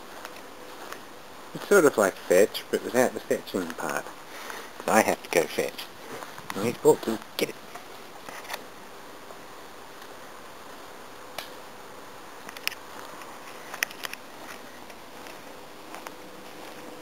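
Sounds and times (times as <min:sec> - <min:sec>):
low background hiss: 0:00.0 - 0:17.0.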